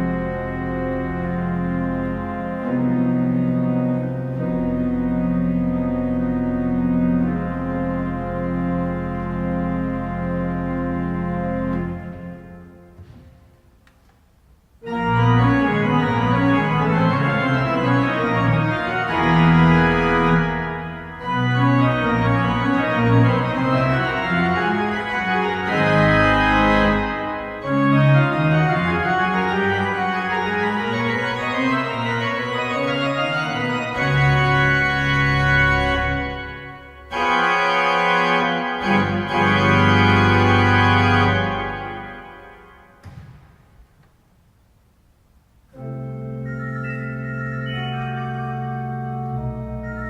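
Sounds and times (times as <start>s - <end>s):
pipe organ playing chords: 0.0s - 43.6s, 45.6s - 50.0s.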